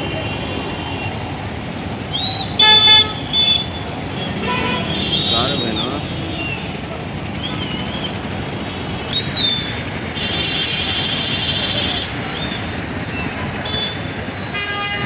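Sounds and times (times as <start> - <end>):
street traffic: 0.0 - 15.0
vehicle horn: 2.6 - 5.4, 10.2 - 12.2, 13.6 - 15.0.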